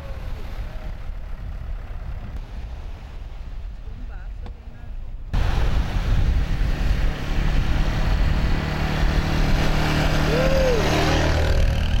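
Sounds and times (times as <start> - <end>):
engine running: 5.4 - 12.0
loud rushing noise: 5.4 - 12.0
rising and falling tone: 6.2 - 12.0.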